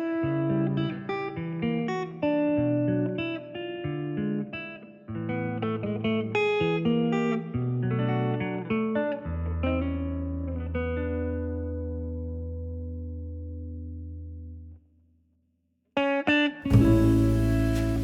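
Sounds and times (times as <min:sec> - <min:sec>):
plucked guitar melody: 0:00.0 - 0:14.6, 0:16.6 - 0:18.0
bass line: 0:16.7 - 0:18.0.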